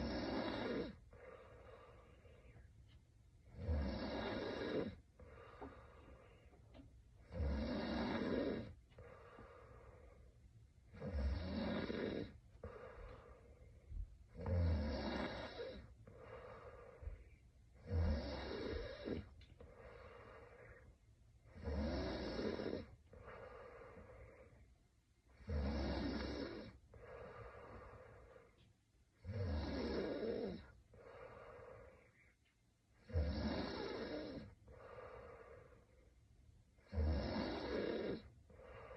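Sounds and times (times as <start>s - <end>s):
woman snoring: 0.0s - 2.4s, 3.5s - 6.3s, 7.2s - 10.2s, 10.9s - 13.4s, 14.3s - 20.9s, 21.5s - 24.6s, 25.3s - 28.6s, 29.2s - 32.2s, 33.0s - 35.9s, 36.8s - 38.9s.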